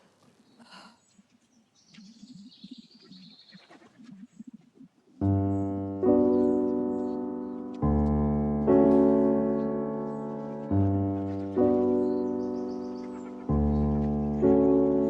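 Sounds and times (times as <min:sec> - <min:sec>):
faint pigeons cooing: 0:00.3 - 0:07.6, 0:09.1 - 0:15.0
piano chords: 0:05.2 - 0:15.0.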